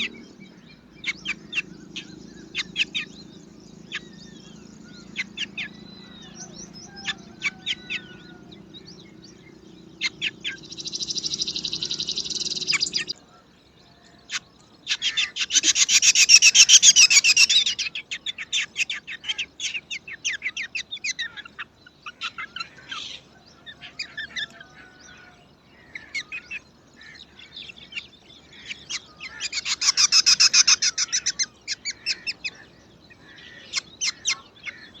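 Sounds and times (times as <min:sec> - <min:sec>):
nestlings chirping: 0:00.0 - 0:13.1.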